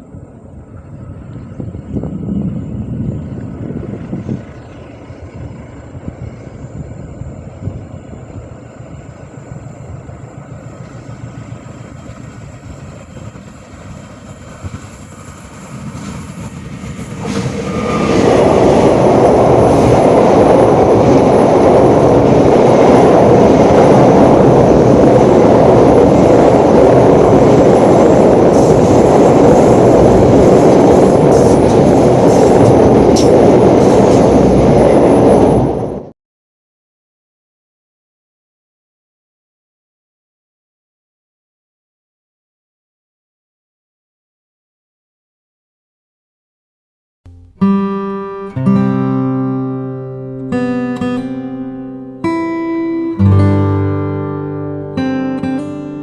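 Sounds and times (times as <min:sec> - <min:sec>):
train rumbling over bridge: 0:00.0 - 0:36.2, 0:47.5 - 0:56.0.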